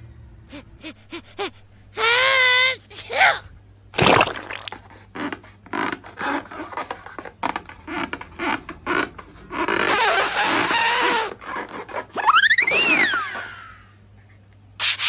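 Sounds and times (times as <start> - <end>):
slime squishing: 4.0 - 5.4.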